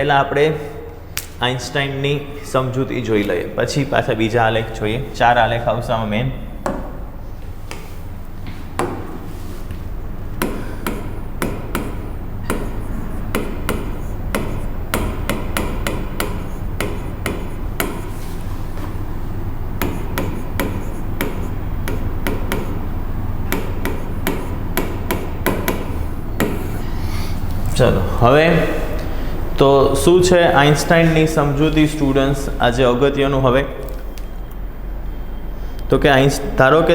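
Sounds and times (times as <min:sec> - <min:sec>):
steady low hum: 0:00.0 - 0:36.9
chalk tapping on blackboard: 0:07.7 - 0:09.8, 0:10.4 - 0:19.0, 0:19.7 - 0:26.9.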